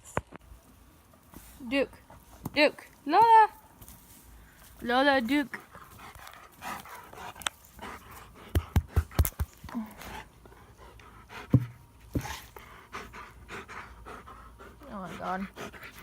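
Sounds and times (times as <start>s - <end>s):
dog panting: 5.3s - 9.2s, 10.0s - 16.0s.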